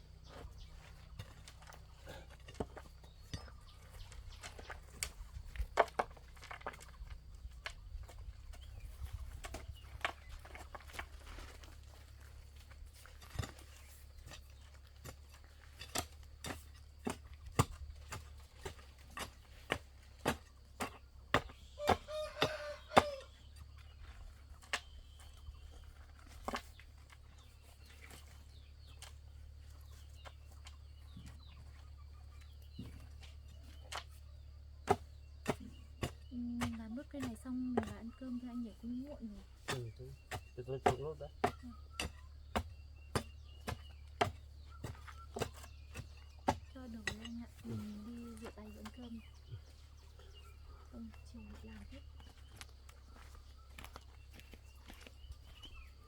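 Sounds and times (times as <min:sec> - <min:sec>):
chicken calling: 0:21.6 - 0:23.5.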